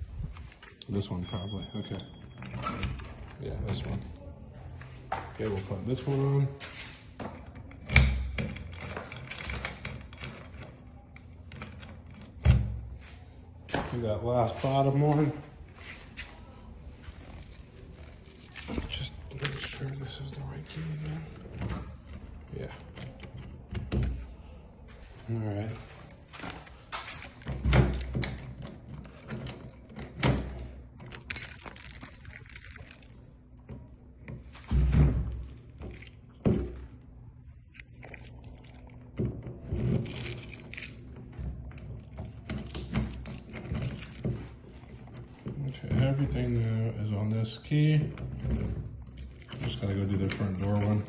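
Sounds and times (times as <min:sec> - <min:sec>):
keys jangling against lock: 0:17.3 - 0:20.6, 0:26.3 - 0:33.7, 0:37.6 - 0:39.1, 0:39.8 - 0:45.2.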